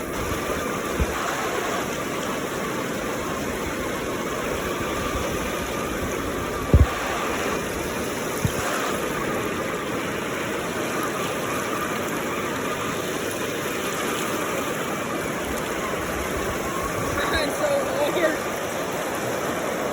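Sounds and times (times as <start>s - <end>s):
river water rushing over rocks: 0.0s - 19.9s
dull low thumps: 6.6s - 7.0s.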